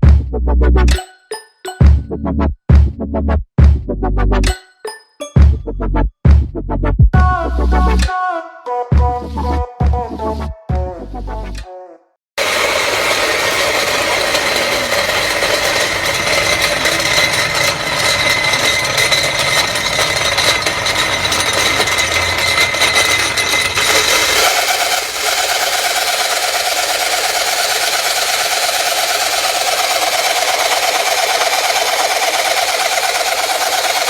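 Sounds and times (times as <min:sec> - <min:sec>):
grinder running with whine: 0:12.4 - 0:34.0.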